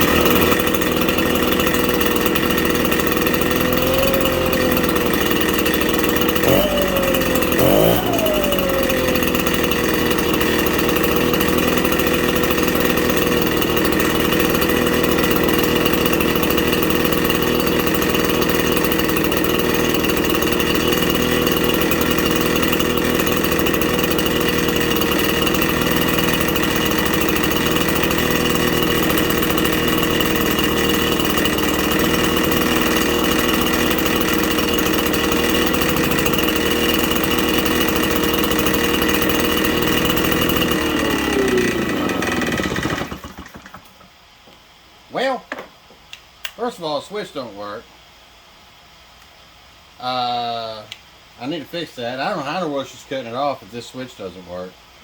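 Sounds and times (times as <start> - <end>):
engine throttle blips: 0.0 - 42.4
leaf blower engine idling: 0.0 - 44.6.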